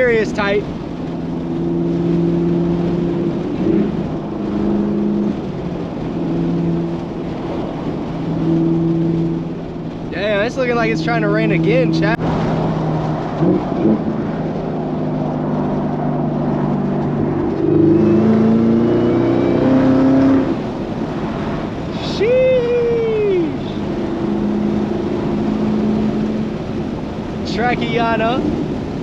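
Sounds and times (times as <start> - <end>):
car engine accelerating: 0.0 - 29.0
short rising and falling tone: 16.7 - 20.7.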